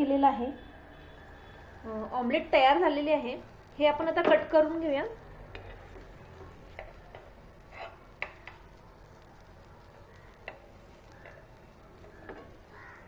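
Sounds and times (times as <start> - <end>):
utensil tapping and scraping pan: 5.5 - 8.6.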